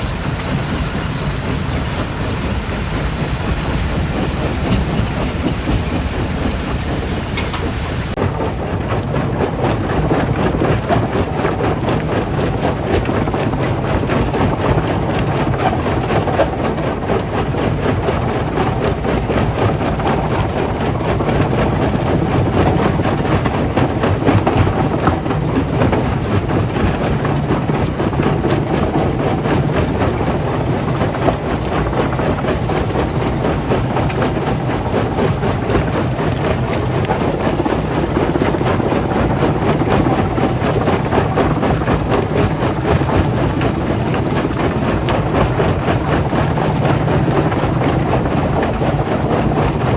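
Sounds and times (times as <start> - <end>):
machinery motor hum: 0.0 - 9.1.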